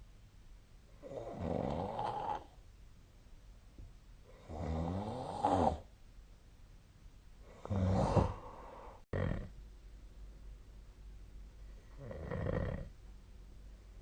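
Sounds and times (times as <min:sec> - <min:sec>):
person snoring: 0:01.0 - 0:02.6, 0:04.3 - 0:05.9, 0:07.5 - 0:09.5, 0:11.9 - 0:12.9.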